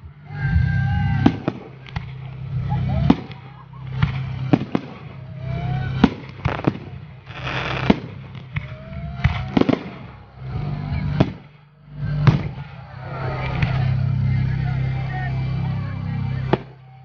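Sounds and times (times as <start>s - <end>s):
crackling hiss: 1.3s - 12.7s
firework shells bursting: 3.1s - 10.2s
rising firework whistles: 4.0s - 11.5s.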